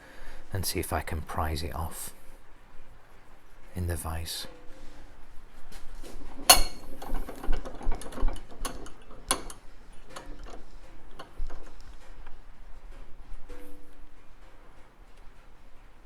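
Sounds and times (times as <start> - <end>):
light metal clatter: 4.5 - 15.6
metal tool clicks and knocks: 6.4 - 11.9.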